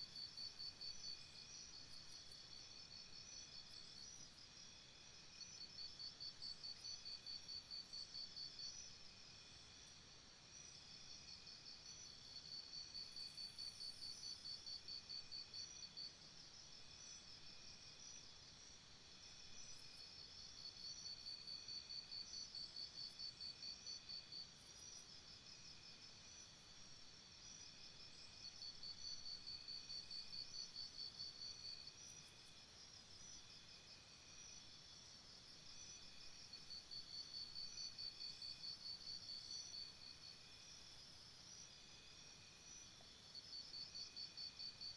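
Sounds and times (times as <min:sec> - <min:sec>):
insect chorus buzzing: 0:17.8 - 0:44.9.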